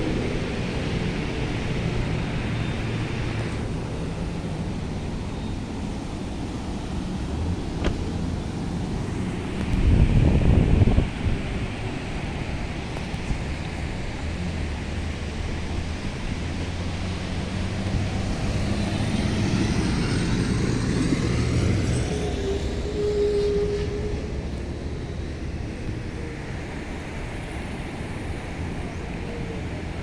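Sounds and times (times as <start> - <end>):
steady surf: 0.0 - 30.0
wind on microphone: 0.0 - 30.0
vehicle passing: 13.8 - 30.0.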